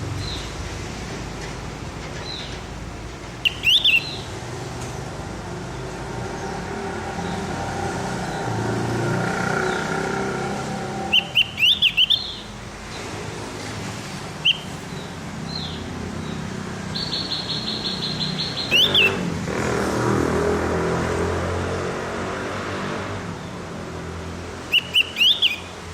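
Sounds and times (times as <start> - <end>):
bird singing chirps and trills: 2.2 - 2.7, 3.3 - 4.4, 11.0 - 13.1, 14.4 - 19.3, 24.6 - 25.9.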